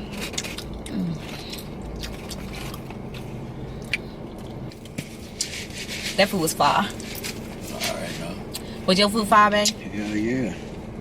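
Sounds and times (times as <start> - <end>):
people chewing: 0.0 - 6.0
steady low hum: 0.0 - 11.0.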